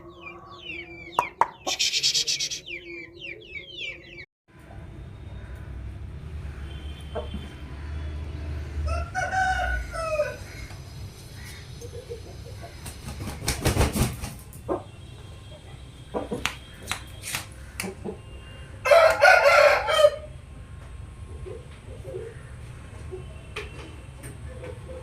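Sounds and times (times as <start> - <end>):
rooster crowing: 8.8 - 10.7, 18.8 - 20.3.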